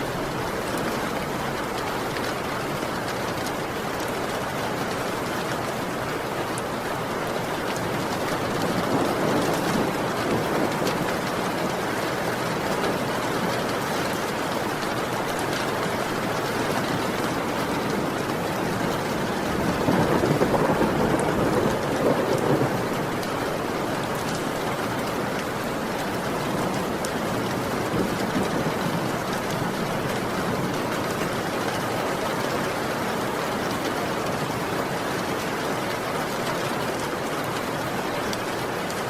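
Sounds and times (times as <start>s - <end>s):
heavy rain falling: 0.0s - 39.0s
low rumble of thunder: 7.3s - 31.2s.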